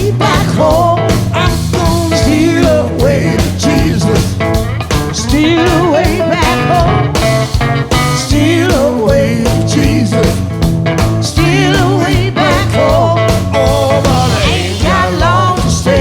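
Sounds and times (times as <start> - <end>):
person singing: 0.0 - 4.4, 5.1 - 7.1, 11.2 - 16.0
drums: 0.0 - 16.0
guitar: 0.0 - 16.0.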